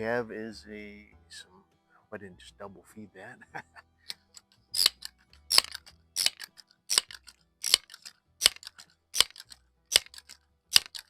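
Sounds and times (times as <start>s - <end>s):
air pistol pump strokes: 4.1s - 11.0s.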